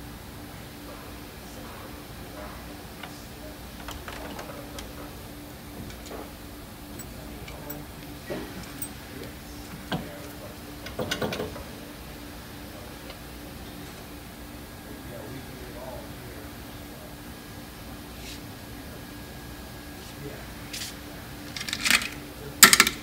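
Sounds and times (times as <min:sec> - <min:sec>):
steady low hum: 0:00.0 - 0:23.0
metal parts clicking and knocking: 0:21.6 - 0:23.0.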